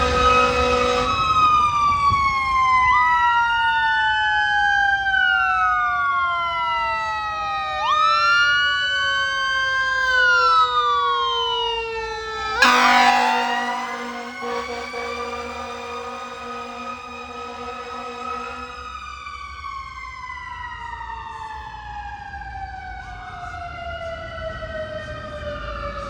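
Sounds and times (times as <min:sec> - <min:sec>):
air horn blast: 0:00.0 - 0:01.5, 0:12.6 - 0:19.2
electronic siren wailing: 0:12.6 - 0:19.5.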